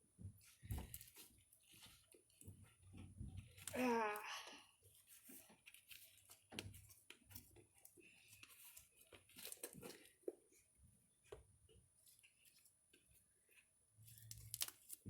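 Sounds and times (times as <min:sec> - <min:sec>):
slime crackling and tearing: 0:14.2 - 0:15.0.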